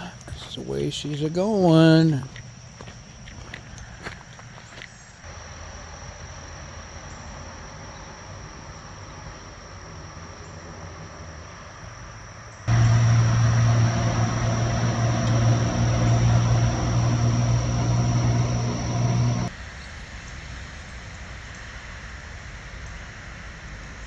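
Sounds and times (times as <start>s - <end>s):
background hiss: 12.7s - 19.5s
loud low drone: 12.7s - 19.5s.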